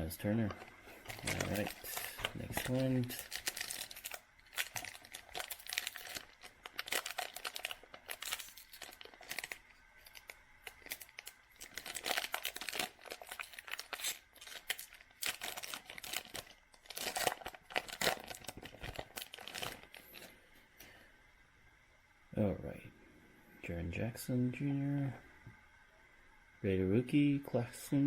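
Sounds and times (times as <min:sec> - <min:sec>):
wrapper crinkling and tearing: 0:00.9 - 0:20.3.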